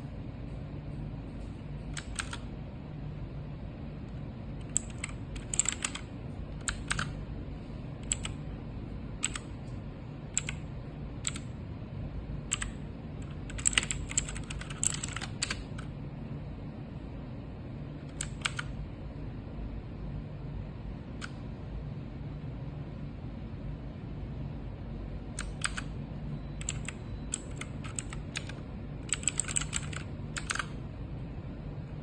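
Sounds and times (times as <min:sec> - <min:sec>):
steady low hum: 0:00.0 - 0:32.0
mechanical keyboard key clicks: 0:02.0 - 0:02.4, 0:04.6 - 0:07.1, 0:08.0 - 0:08.3, 0:09.2 - 0:09.5, 0:10.4 - 0:10.6, 0:11.2 - 0:11.5, 0:12.5 - 0:15.6, 0:18.1 - 0:18.7, 0:25.4 - 0:25.9, 0:26.6 - 0:30.7.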